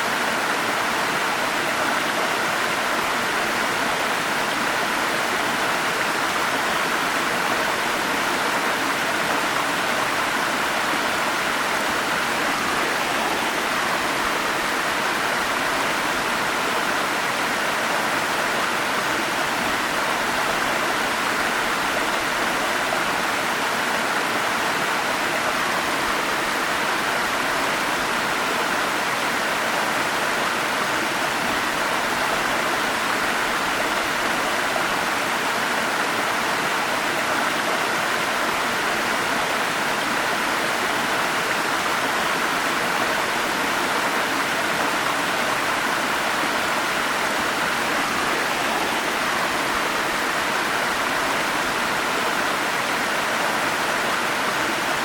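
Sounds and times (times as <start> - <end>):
stream flowing: 0.0 - 55.0.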